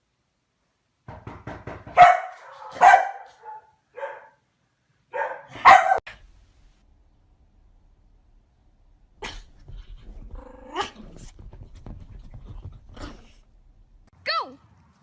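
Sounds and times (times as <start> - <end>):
dog barking: 1.9 - 4.4, 5.1 - 6.2.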